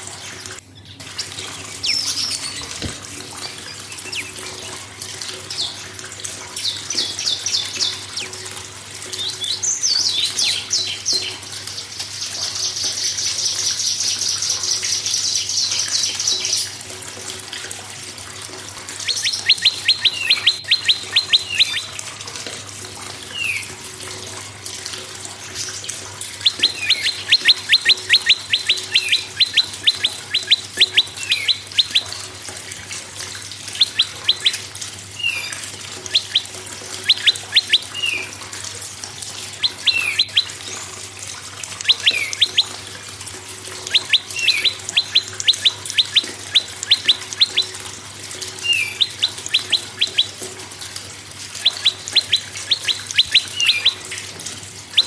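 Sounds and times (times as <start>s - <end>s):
songbirds calling: 0.0s - 17.1s, 18.3s - 55.0s
bird chipping notes: 1.6s - 5.9s, 18.9s - 22.0s, 25.5s - 32.7s, 33.6s - 38.5s, 39.4s - 40.9s, 41.6s - 43.0s, 43.7s - 50.5s, 51.6s - 54.3s
bird trilling: 1.7s - 4.8s, 19.0s - 22.0s, 26.4s - 32.4s, 33.7s - 38.4s, 39.4s - 40.9s, 41.8s - 42.9s, 43.8s - 50.4s, 51.6s - 54.3s.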